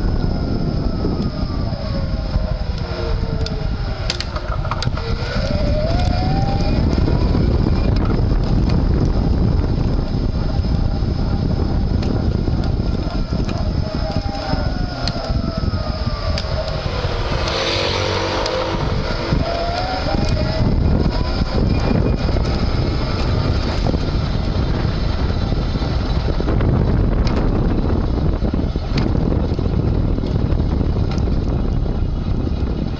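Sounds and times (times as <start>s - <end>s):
electric bicycle motor whine: 0.0s - 32.9s
wind noise: 0.0s - 32.9s.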